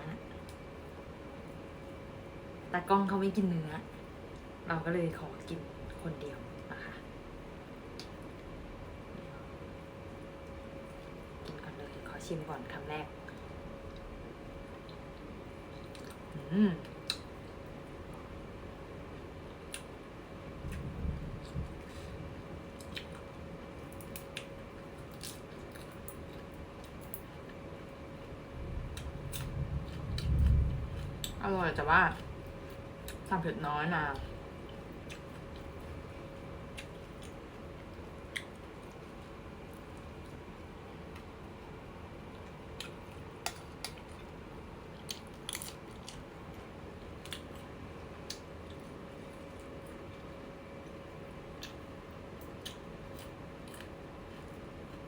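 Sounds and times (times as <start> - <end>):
faint steady hum: 0.0 - 55.0
person chewing: 22.8 - 23.3, 34.6 - 40.4, 42.3 - 46.3, 52.5 - 54.6.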